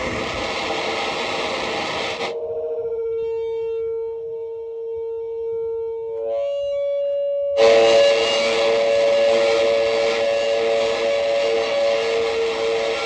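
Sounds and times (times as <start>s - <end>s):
harsh noise wall: 0.0s - 2.4s, 7.6s - 13.0s
electronic droning tones: 0.0s - 3.3s, 7.6s - 13.0s.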